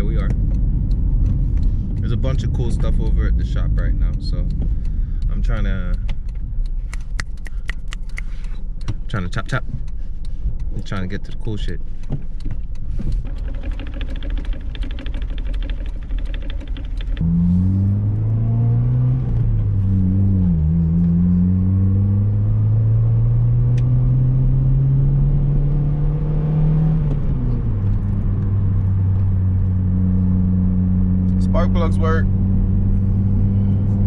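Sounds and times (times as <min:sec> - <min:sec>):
car engine cranking and idling: 0:00.0 - 0:34.0.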